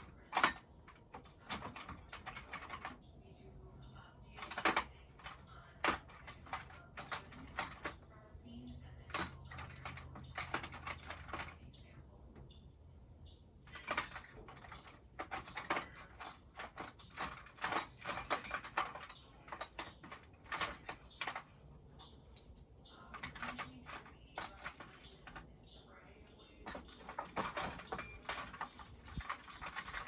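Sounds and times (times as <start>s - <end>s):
metal hand tools clinking: 13.7s - 21.4s, 26.6s - 30.0s.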